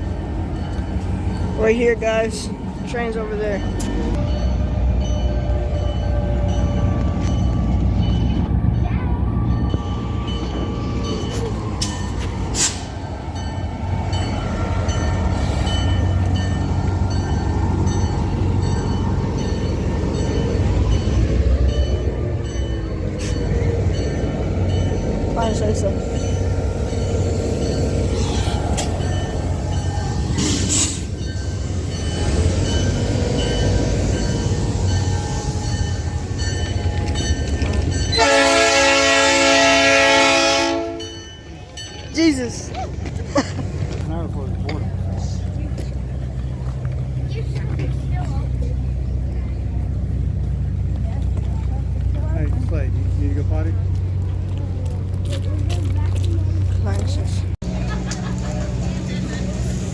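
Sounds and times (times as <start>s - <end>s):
train rumbling: 0.0s - 59.9s
train horn blast: 38.1s - 41.2s.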